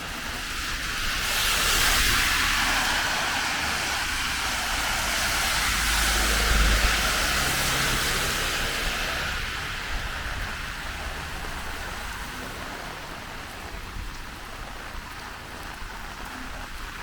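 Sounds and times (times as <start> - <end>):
heavy rain: 0.0 - 17.0
vehicle passing by: 1.3 - 13.6.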